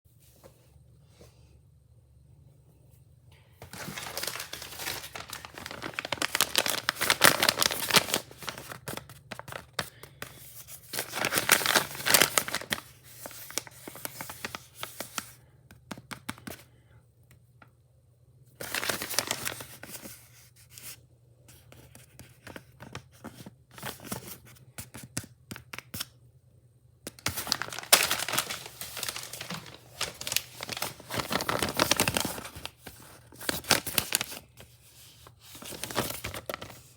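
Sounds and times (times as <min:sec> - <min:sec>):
wrapping paper tearing: 0:03.6 - 0:09.6, 0:10.8 - 0:14.6, 0:18.6 - 0:19.7, 0:27.1 - 0:34.6, 0:35.4 - 0:36.9
paper crumpling: 0:03.6 - 0:15.3, 0:18.6 - 0:20.2, 0:27.1 - 0:36.9.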